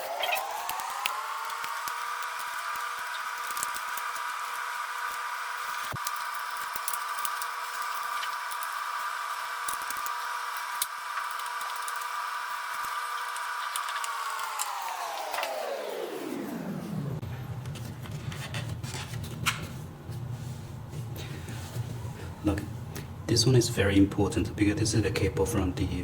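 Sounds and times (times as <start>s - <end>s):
small electric motor whining: 0.0s - 17.2s.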